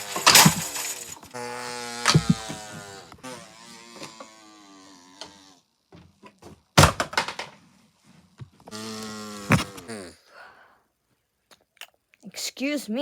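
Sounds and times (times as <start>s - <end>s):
small knocks and thunks: 0.0s - 1.4s, 2.0s - 3.2s, 5.9s - 7.6s, 9.5s - 9.9s
person sneezing: 9.5s - 10.6s.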